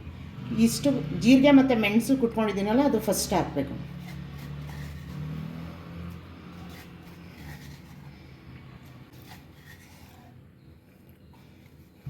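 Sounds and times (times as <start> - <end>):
spoon scraping a vessel: 2.5 - 12.0.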